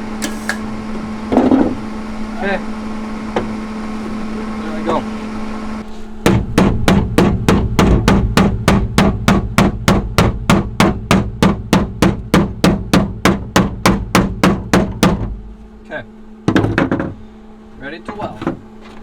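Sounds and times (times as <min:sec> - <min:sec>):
hammering on sheet metal: 0:06.2 - 0:15.3.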